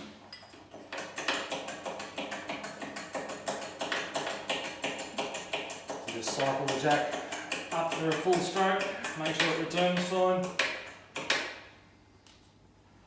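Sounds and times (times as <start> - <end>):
hydraulic jack handle clicking and knocking: 0.5 - 11.6.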